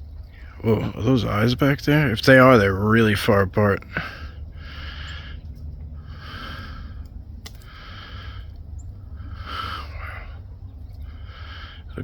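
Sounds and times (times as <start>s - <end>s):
steady low rumble: 0.0s - 12.0s
person breathing: 3.8s - 12.0s.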